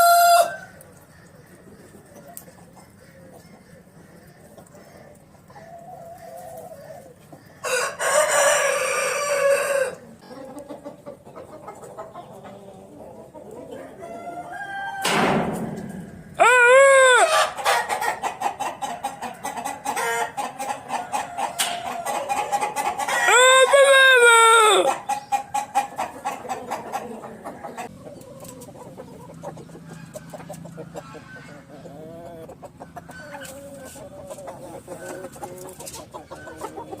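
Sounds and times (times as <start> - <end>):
rooster crowing: 0.0 - 0.8, 7.6 - 10.0, 13.8 - 15.2, 16.3 - 17.6, 23.1 - 25.0
chickens clucking: 0.0 - 37.0.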